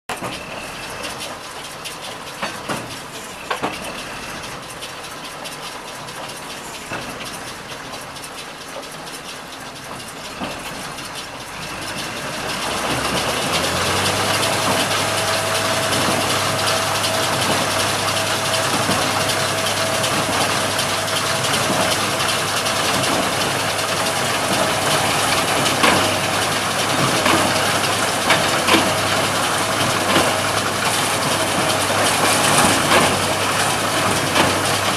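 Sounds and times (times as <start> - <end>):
square baler running: 0.1 - 34.9
tractor engine running: 0.1 - 34.9.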